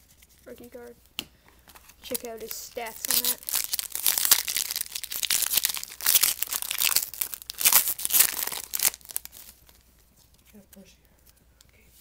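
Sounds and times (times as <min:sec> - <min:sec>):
foil wrapper crinkling and tearing: 0:01.9 - 0:09.8.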